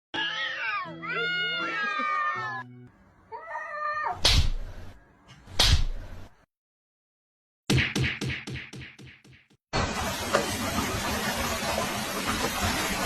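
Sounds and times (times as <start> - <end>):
cats yowling: 0.2 - 2.6, 3.3 - 4.2.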